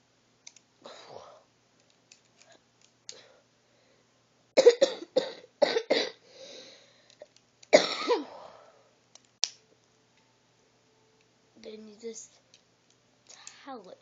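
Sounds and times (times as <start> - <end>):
person coughing: 4.6 - 6.2, 7.7 - 8.6.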